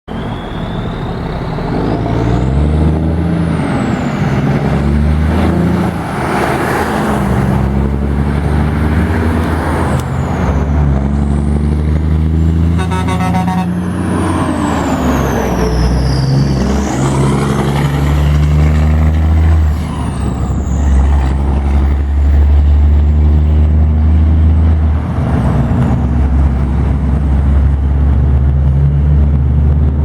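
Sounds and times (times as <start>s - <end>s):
turbo whistle: 0.1s - 1.7s, 12.8s - 13.8s
diesel truck exhaust accelerating: 0.1s - 30.0s.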